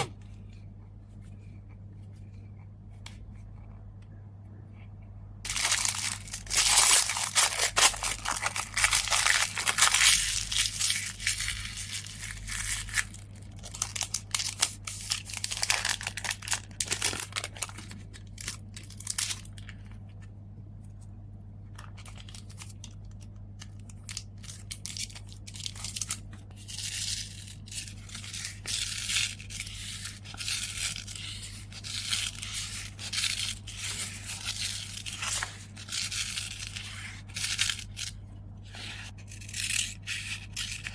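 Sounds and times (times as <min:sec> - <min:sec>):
steady low hum: 0:00.0 - 0:40.9
packaging rustling and tearing: 0:05.5 - 0:19.9, 0:21.8 - 0:40.9.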